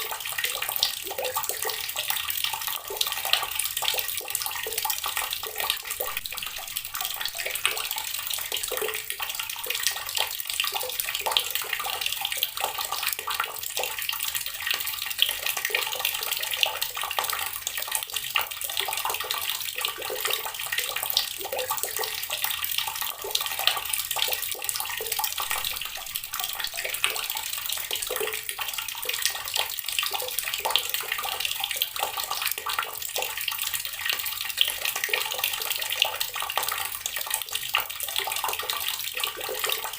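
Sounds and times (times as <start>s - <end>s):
water running from a tap: 0.0s - 39.9s.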